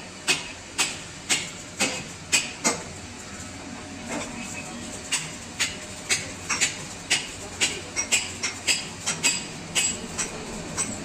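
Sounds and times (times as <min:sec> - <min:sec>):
hammer striking metal: 0:05.1 - 0:11.0.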